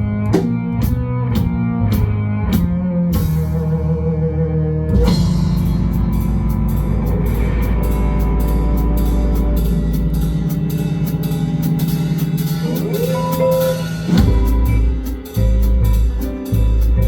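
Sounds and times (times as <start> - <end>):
kick drum strokes: 0.3 - 3.4, 13.4 - 17.0
live band playing: 4.9 - 17.0.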